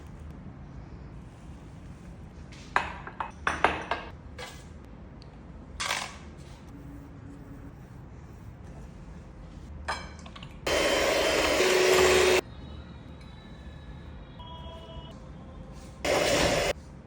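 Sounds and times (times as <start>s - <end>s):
kitchenware clinks and knocks: 2.8s - 4.2s.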